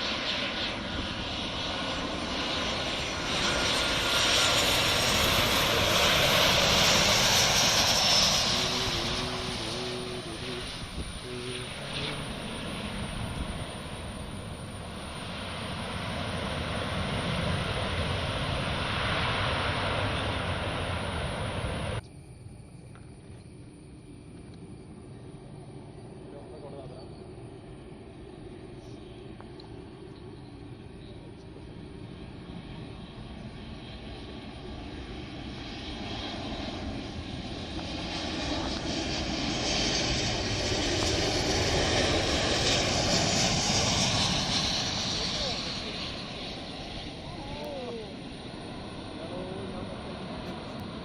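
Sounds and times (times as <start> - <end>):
airliner engine rush: 0.0 - 22.6, 23.5 - 51.0.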